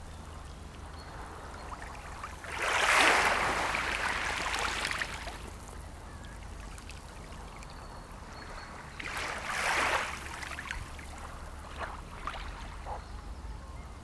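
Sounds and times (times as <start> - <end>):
sea waves washing on shore: 1.1 - 7.6, 9.0 - 12.7.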